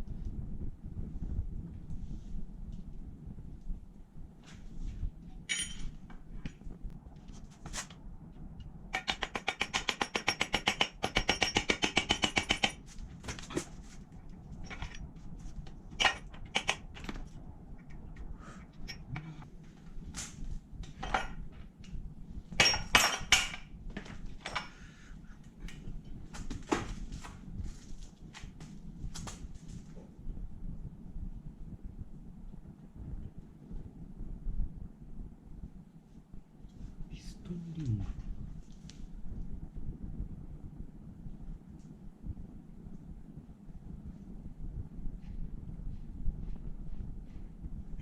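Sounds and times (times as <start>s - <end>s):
metal parts and tools clinking: 5.5s - 6.0s, 14.6s - 15.1s, 15.9s - 17.1s, 20.9s - 21.4s, 22.6s - 23.7s, 24.4s - 24.8s.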